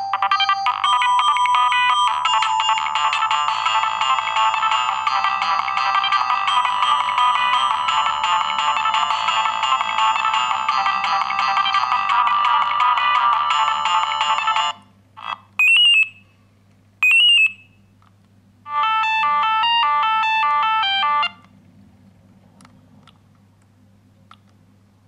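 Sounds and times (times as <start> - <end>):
phone ringtone melody: 0.0 - 14.8, 18.7 - 21.4
short rising chirps: 17.0 - 17.7.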